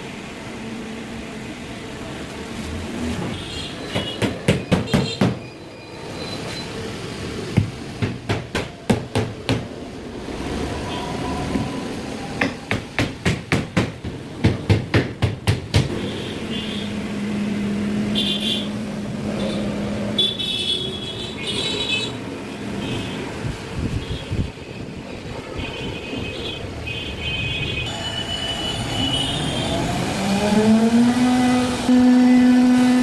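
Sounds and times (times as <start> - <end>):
rapid sharp knocks: 3.9 - 5.4, 7.6 - 9.7, 12.4 - 16.0.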